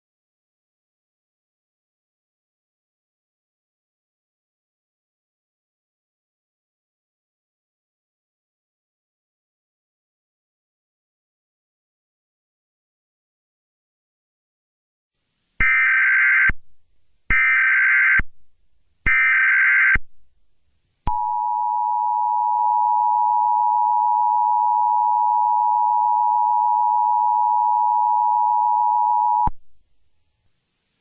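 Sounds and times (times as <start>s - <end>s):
two-tone attention signal: 21.1s - 29.5s.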